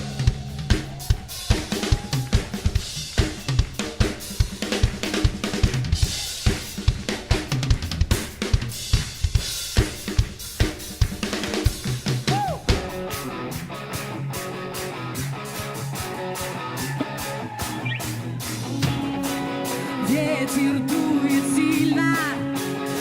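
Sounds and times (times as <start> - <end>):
bass line: 0.0 - 3.8, 11.9 - 23.0
fast drum kit beat: 0.0 - 23.0.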